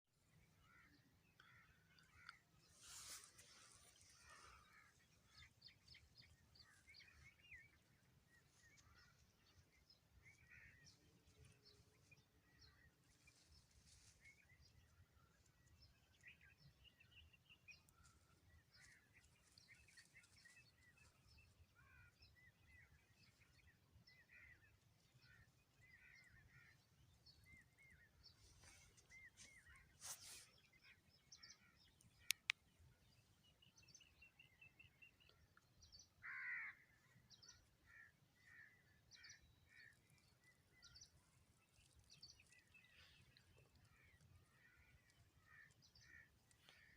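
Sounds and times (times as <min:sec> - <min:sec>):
small birds chirping: 0:00.2 - 0:46.9
rustling noise: 0:02.7 - 0:04.1, 0:28.4 - 0:30.5
sharp clicks: 0:32.3 - 0:32.6.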